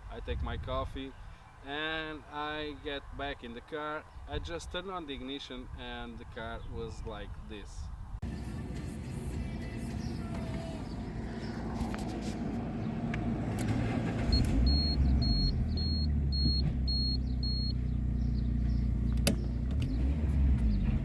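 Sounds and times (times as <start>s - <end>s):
dashboard warning chime beeping: 14.3s - 17.8s.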